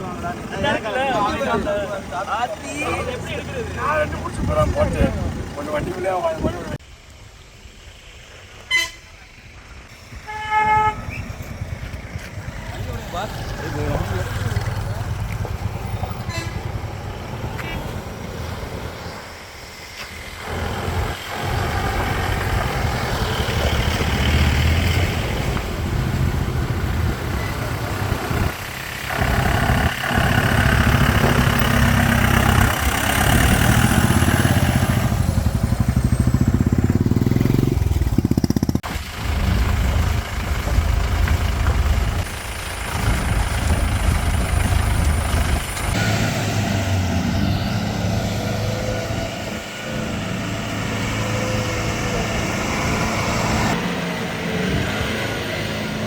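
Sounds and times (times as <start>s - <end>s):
diesel engine revving: 0.0s - 6.8s, 20.1s - 56.0s.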